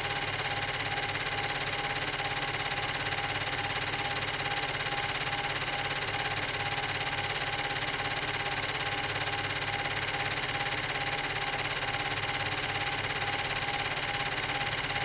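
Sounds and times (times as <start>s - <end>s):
mechanical whirring with pulsing beat: 0.0s - 15.0s.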